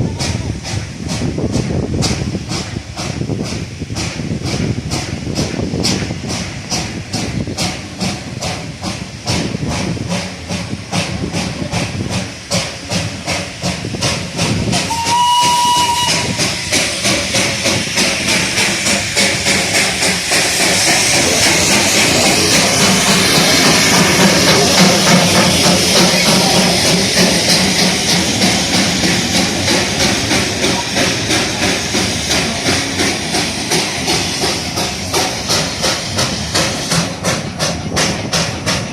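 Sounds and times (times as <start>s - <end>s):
steam hiss: 0.0s - 38.9s
steam locomotive exhaust chuffs: 0.0s - 38.9s
train whistle: 14.9s - 16.5s.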